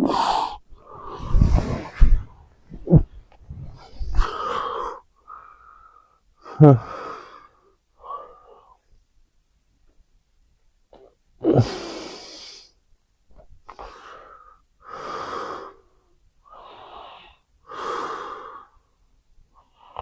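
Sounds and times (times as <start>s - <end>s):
person snoring heavily: 0.0s - 5.0s.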